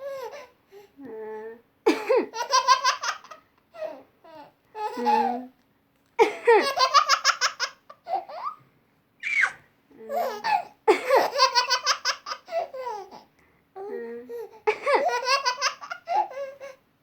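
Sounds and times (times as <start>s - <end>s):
baby laughing: 2.3s - 4.0s, 6.5s - 8.6s, 9.2s - 13.3s, 14.7s - 16.8s.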